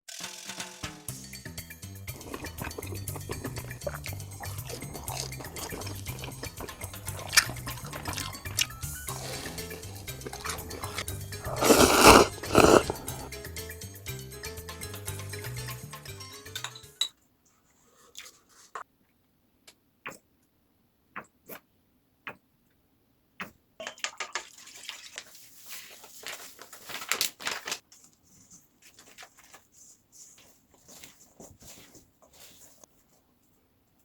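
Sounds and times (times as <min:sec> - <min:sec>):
tableware clicks and taps: 0:16.6 - 0:17.2
crackling rustle: 0:25.5 - 0:32.9.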